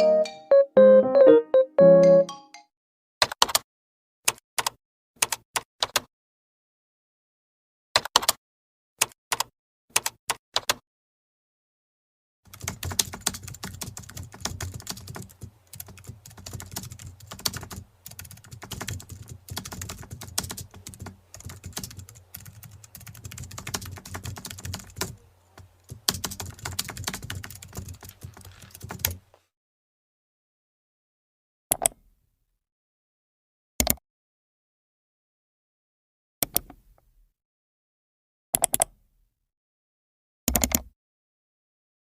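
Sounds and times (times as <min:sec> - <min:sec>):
fast irregular clicking and tapping: 0:12.5 - 0:29.2.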